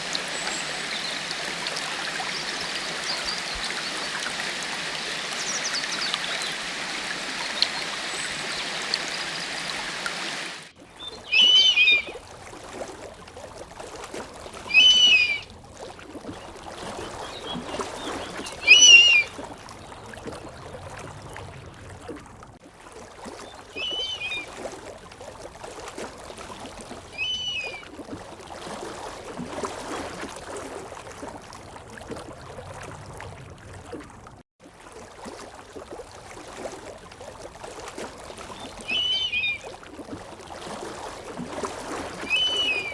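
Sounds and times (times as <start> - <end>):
rushing stream water: 0.0 - 21.9, 22.8 - 32.1, 34.7 - 42.9
animal short loud calls: 11.3 - 12.1
faint chirps: 42.3 - 42.9.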